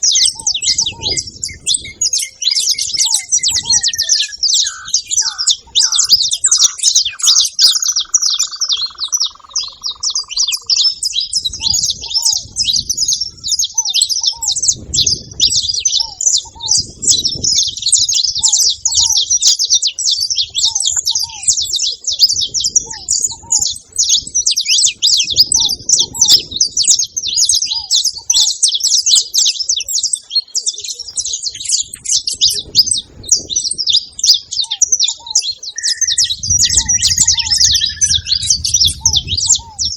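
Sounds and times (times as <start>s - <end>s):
finches chirping: 0.0s - 39.9s
falling whistle: 35.8s - 38.4s.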